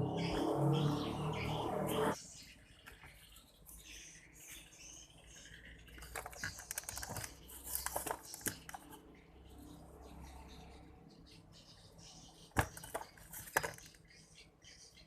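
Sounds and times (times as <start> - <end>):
small objects clicking and tapping: 5.9 - 9.0, 12.5 - 14.2.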